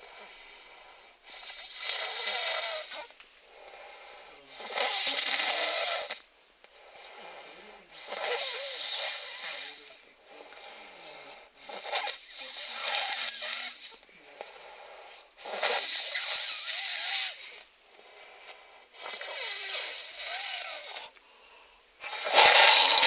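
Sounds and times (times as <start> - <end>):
person snoring: 0.0 - 21.1, 22.0 - 23.0
quiet breathing: 0.0 - 23.0.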